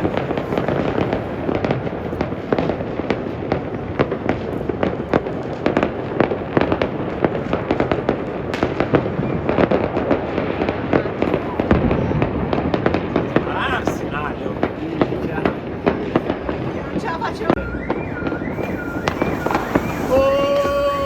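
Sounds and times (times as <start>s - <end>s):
firecrackers bangs and crackles: 0.0s - 21.0s
distant firework bursts: 17.9s - 21.0s.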